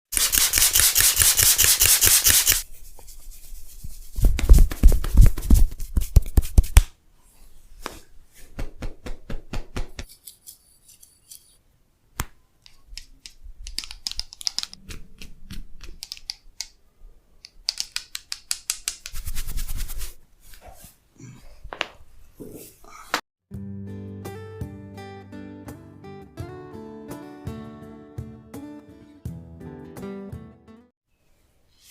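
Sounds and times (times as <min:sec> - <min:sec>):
hand taps and rubbing: 0:04.2 - 0:06.9.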